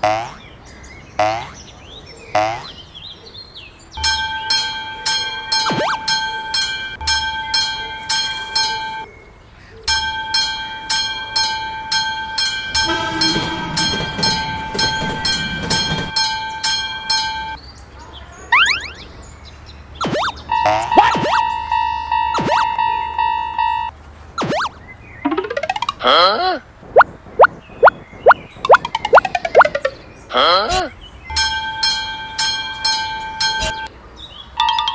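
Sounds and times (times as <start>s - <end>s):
lower-pitched crossing bell: 4.0s - 9.1s, 9.9s - 17.6s, 31.3s - 33.9s
railroad crossing bell ringing: 4.0s - 9.1s, 9.9s - 17.6s, 20.4s - 24.0s, 31.3s - 33.9s
low rumble: 12.7s - 16.2s
sliding whistle sound effects: 20.0s - 21.6s, 22.3s - 22.7s, 24.4s - 26.0s.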